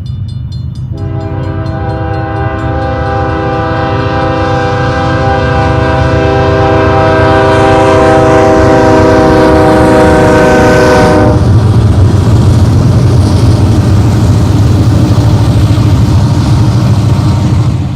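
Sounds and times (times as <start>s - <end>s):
train low rumble: 0.0s - 17.9s
locomotive air horn chord: 0.9s - 11.6s.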